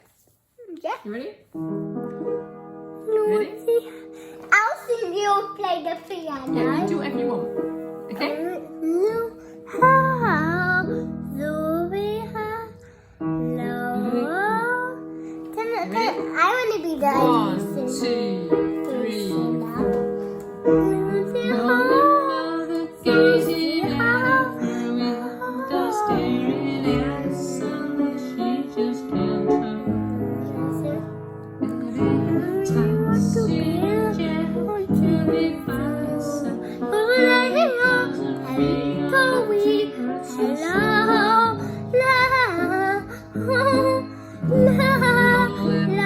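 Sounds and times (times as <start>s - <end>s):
piano accompaniment: 1.1s - 46.0s
girl singing: 3.0s - 7.2s, 8.1s - 46.0s
woman singing: 9.7s - 12.8s, 13.4s - 15.0s, 17.2s - 46.0s.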